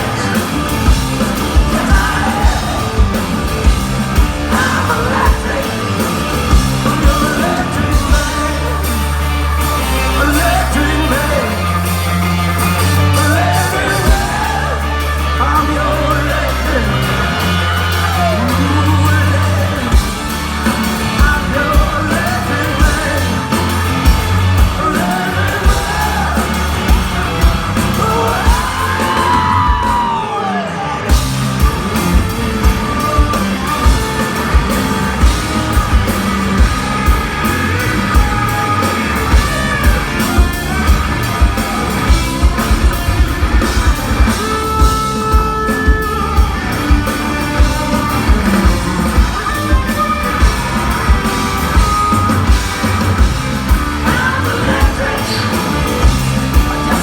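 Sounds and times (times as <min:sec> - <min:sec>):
heavy bass: 0:00.0 - 0:57.0
rock band playing live: 0:00.0 - 0:57.0.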